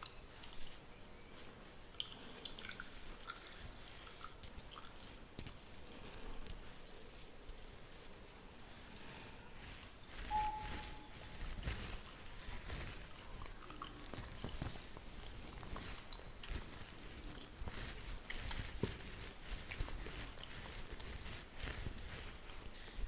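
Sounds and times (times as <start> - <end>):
fingernails scratching beard: 3.0 - 13.2, 13.9 - 23.0.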